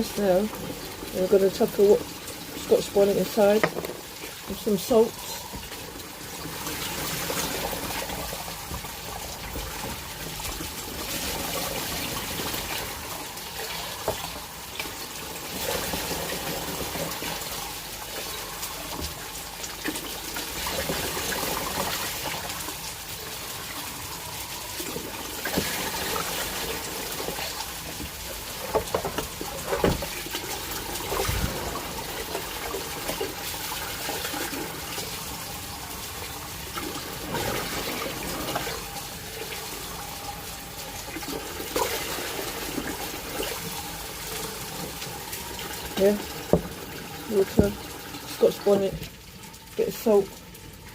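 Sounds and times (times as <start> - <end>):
water running from tap: 0.0 - 50.9
pots knocking: 3.6 - 4.0.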